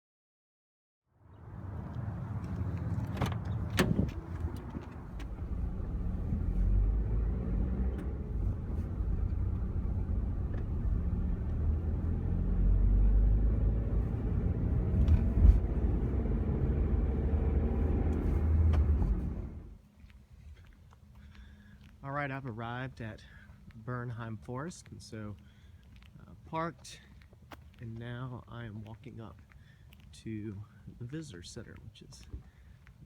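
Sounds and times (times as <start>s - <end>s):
car engine and road noise: 1.1s - 19.9s.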